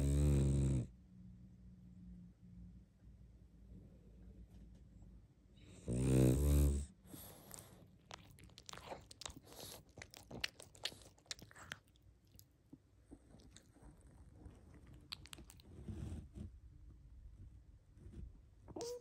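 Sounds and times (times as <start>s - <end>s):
dog snoring breath: 0.0s - 0.9s, 5.6s - 8.3s
dog smacking lips: 7.1s - 16.1s.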